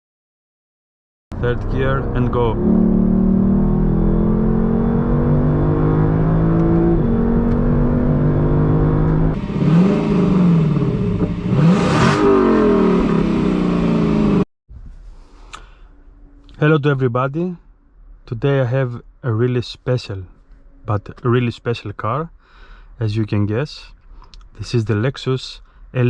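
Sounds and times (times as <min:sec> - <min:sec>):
car engine accelerating hard: 0:01.4 - 0:14.4.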